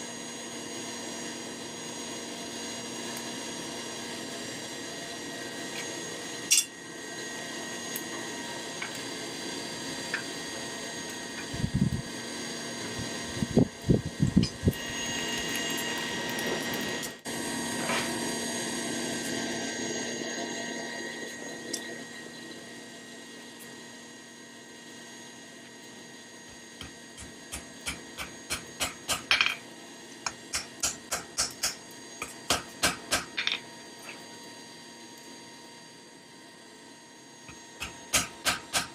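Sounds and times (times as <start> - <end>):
machinery hum: 3.8 - 24.4
hammer striking hot steel: 6.4 - 6.8, 26.8 - 29.6, 30.2 - 33.6, 37.5 - 38.9.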